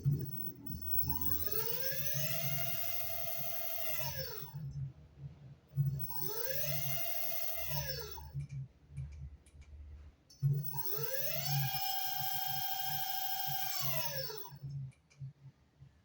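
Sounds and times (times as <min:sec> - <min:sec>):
electric scooter motor whining: 0:00.0 - 0:04.6, 0:05.9 - 0:08.4, 0:10.6 - 0:14.6.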